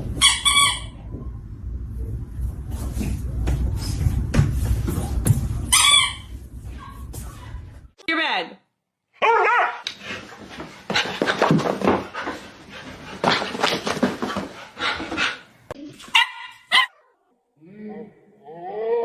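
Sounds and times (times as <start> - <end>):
dog yipping: 9.2 - 9.8, 16.1 - 17.1.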